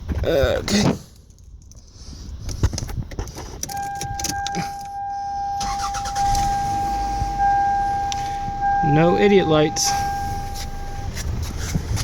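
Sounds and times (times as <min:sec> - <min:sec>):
keys rattling in ignition: 0:01.1 - 0:12.0
car engine cranking and running: 0:01.2 - 0:12.0
steady electronic tone: 0:03.7 - 0:11.2.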